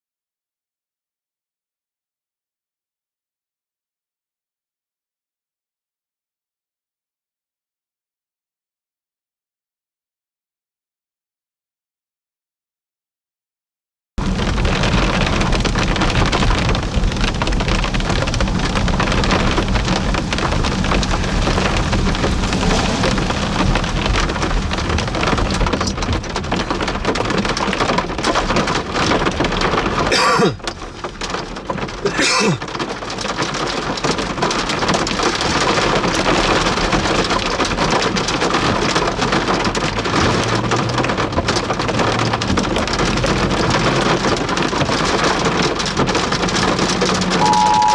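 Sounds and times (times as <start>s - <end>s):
heavy rain and hail: 14.2s - 47.9s.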